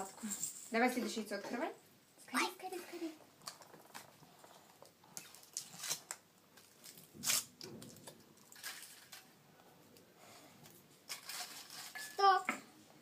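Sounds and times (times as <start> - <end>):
foil wrapper crinkling and clicks: 5.2 - 9.2.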